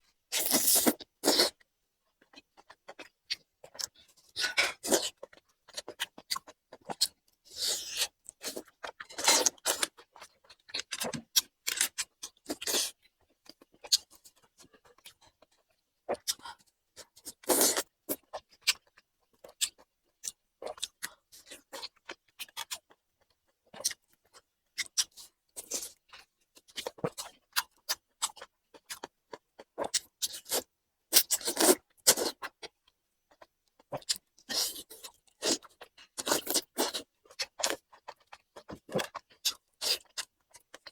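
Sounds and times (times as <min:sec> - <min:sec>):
chewing and mouth noises: 0:08.4 - 0:40.9.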